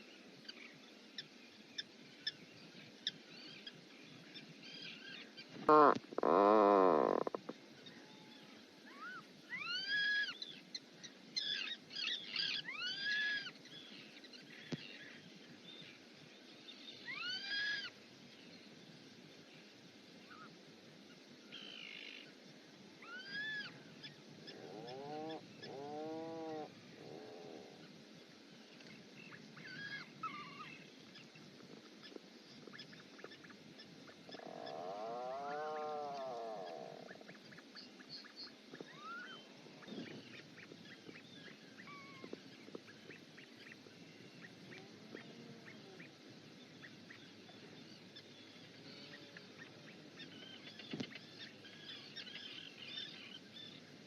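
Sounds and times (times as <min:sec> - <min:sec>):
birds chirping calls: 0:00.0 - 0:18.6, 0:28.6 - 0:54.0
bird calling: 0:05.0 - 0:08.3, 0:34.1 - 0:46.1.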